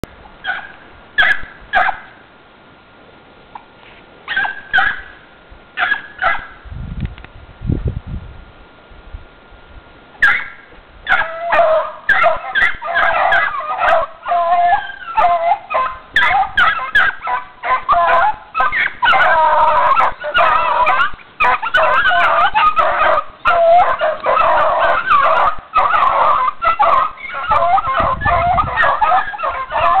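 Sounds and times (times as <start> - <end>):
dogs yelping and howling: 0.4 - 2.1, 4.3 - 5.1, 10.2 - 30.0.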